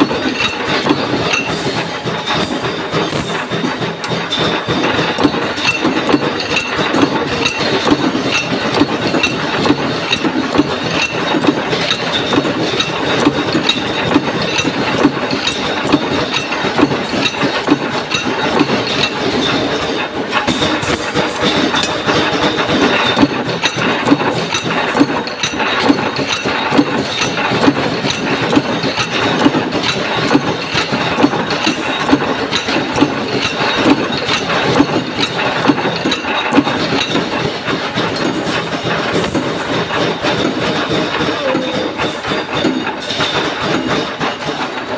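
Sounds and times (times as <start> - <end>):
punch press stamping metal: 0.0 - 44.9.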